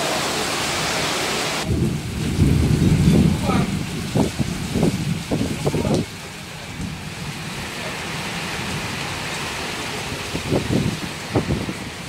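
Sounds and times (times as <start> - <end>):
heavy rain pouring: 0.0 - 12.0
low rumbles: 1.6 - 9.6.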